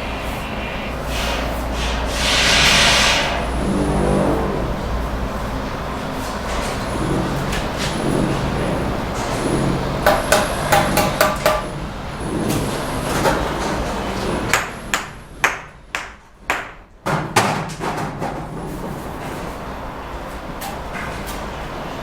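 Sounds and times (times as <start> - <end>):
trowel tapping bricks: 10.1 - 11.7.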